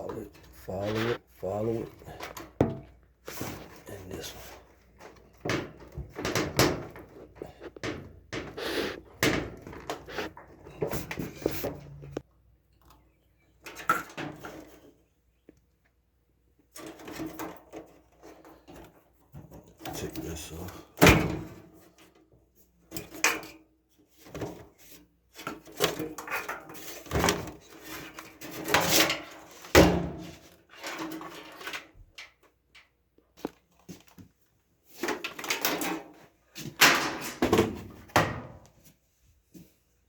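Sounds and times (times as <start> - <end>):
knocks clicks and scrapes: 0.0 - 12.3.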